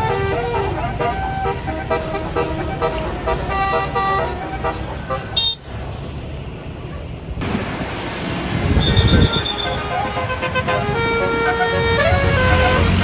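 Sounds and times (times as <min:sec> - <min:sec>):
musical bus horn: 0:00.0 - 0:05.6, 0:08.6 - 0:13.0
traffic noise: 0:00.0 - 0:13.0.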